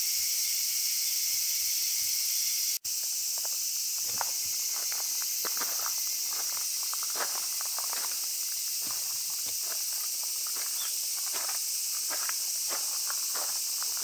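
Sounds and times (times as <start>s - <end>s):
cicadas chorus: 0.0s - 14.0s
footsteps walking: 2.9s - 14.0s.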